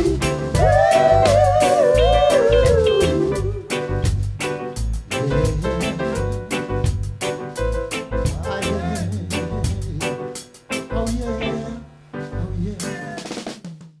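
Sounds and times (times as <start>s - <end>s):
reggae band playing: 0.0s - 13.8s
man singing: 5.1s - 6.4s, 8.2s - 13.6s.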